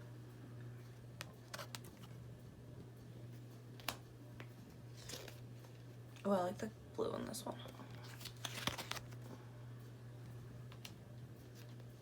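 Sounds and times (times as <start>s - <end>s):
steady low hum: 0.0s - 12.0s
soft clicks of cards handled: 1.2s - 2.1s, 3.8s - 5.8s, 10.7s - 11.9s.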